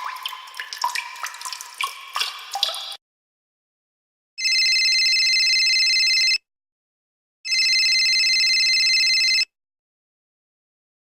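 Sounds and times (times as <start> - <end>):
electronic telephone ringing: 4.4 - 6.4, 7.5 - 9.5.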